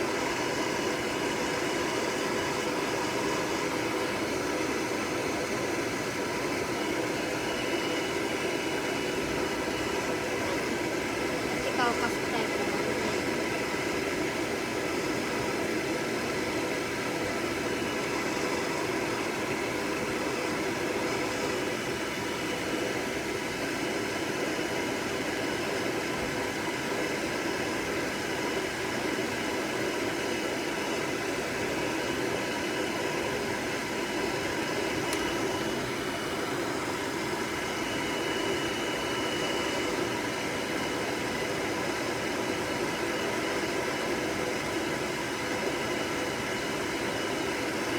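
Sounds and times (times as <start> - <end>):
hair dryer running: 0.0 - 47.9.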